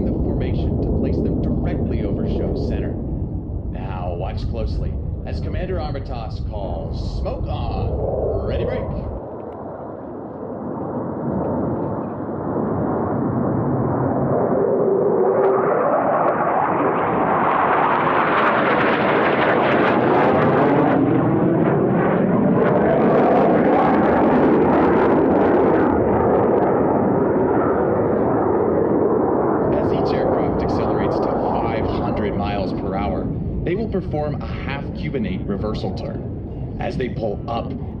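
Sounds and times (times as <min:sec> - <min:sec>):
jet aircraft flying past: 0:00.0 - 0:38.0.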